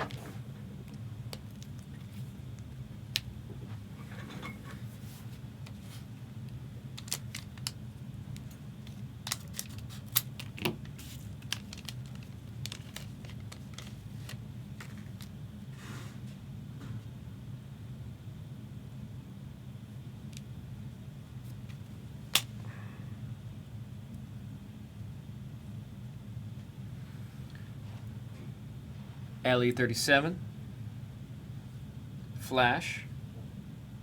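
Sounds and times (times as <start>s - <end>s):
steady low hum: 0.0s - 34.0s
card stock clicks and snaps: 8.4s - 14.4s.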